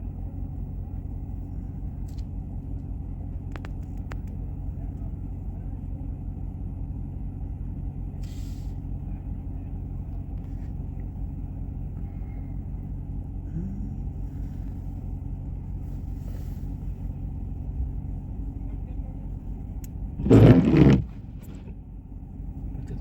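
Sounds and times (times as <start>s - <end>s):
car engine and road noise: 0.0s - 23.0s
brief hisses: 8.2s - 8.8s.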